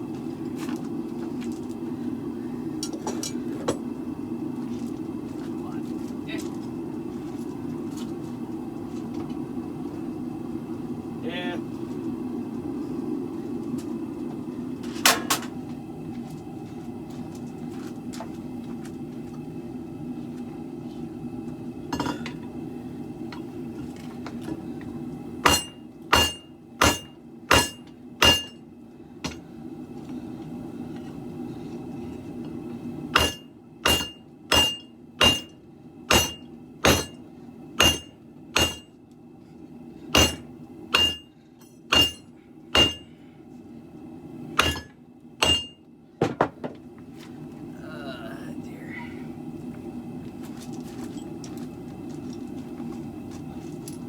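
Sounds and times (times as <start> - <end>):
steady low hum: 0.0 - 54.0
hammer striking steel on anvil: 25.4 - 28.6, 33.2 - 37.2, 37.8 - 38.9, 40.2 - 43.1, 44.6 - 45.8.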